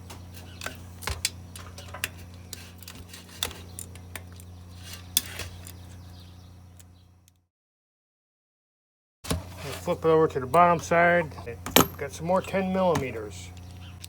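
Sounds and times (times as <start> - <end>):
steady low hum: 9.3 - 14.0
metal tools clinking on engine: 10.4 - 13.2.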